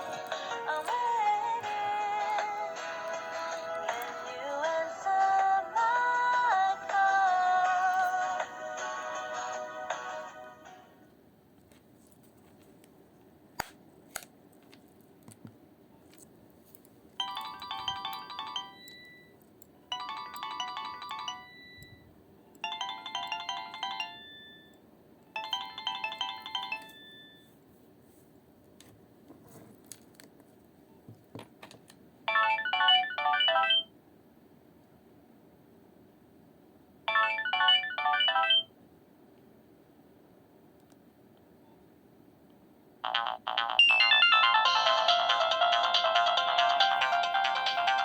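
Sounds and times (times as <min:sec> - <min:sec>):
phone ringtone melodies: 0:17.2 - 0:24.8, 0:25.4 - 0:27.6, 0:32.3 - 0:33.9, 0:37.1 - 0:38.7, 0:43.0 - 0:48.0.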